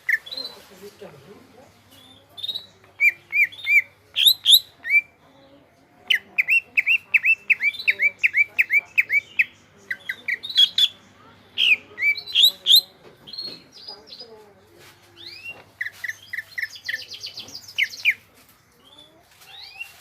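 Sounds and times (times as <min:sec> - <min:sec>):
bird singing whistled notes: 0:02.0 - 0:05.1, 0:11.6 - 0:14.2, 0:15.2 - 0:18.2, 0:18.8 - 0:20.0.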